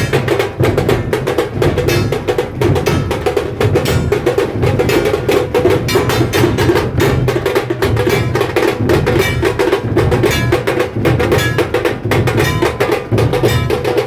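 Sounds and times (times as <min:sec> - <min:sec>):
drums beaten rapidly: 0:00.0 - 0:14.0.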